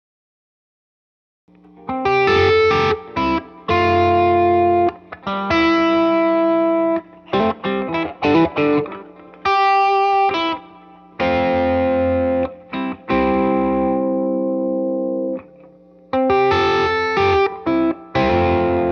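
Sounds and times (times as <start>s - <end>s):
overdriven electric guitar: 1.5s - 18.9s.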